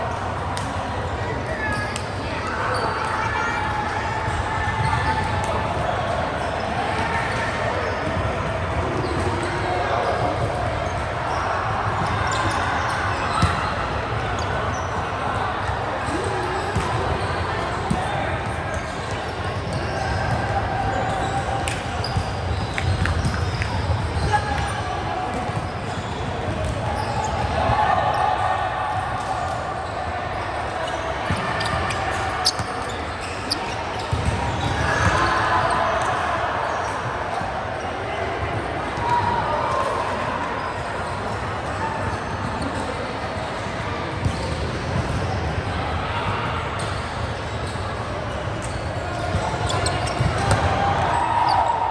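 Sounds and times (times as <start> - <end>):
echoing sports hall noise: 0.0 - 51.9
players' voices: 0.0 - 51.9
shoes squeaking on court floor: 12.0 - 15.1, 18.7 - 27.9, 29.7 - 36.2, 44.2 - 45.6, 48.6 - 51.8.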